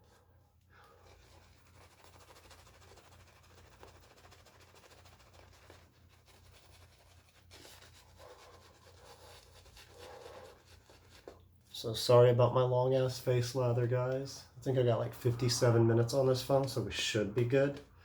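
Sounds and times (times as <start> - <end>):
shaving brush scrubbing: 0.8 - 11.4.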